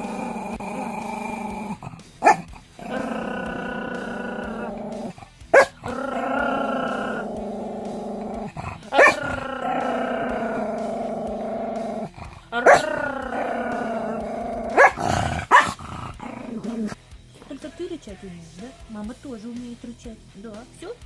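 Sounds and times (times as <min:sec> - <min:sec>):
dog growling: 0:00.0 - 0:17.0
dog barking sharply: 0:05.6 - 0:05.8, 0:14.7 - 0:15.9.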